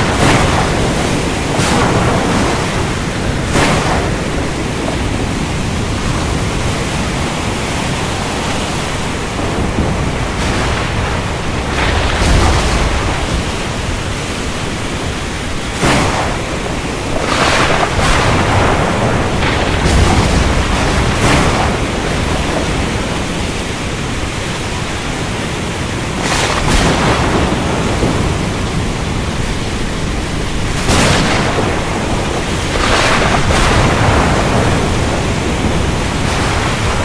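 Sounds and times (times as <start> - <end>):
deep thunder rumble: 0.0 - 37.0
heavy rain falling: 0.0 - 37.0
thunder cracks: 0.0 - 37.0.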